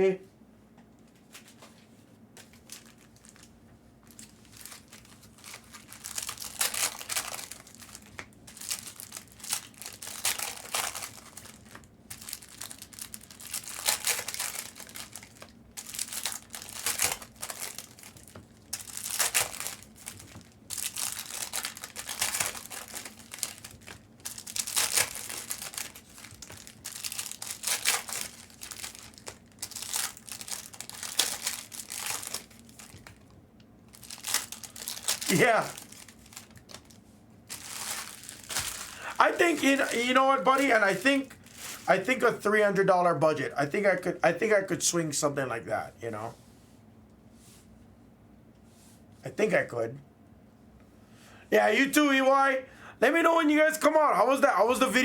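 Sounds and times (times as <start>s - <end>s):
foil wrappers torn and crinkled: 2.4s - 33.3s, 33.9s - 42.2s.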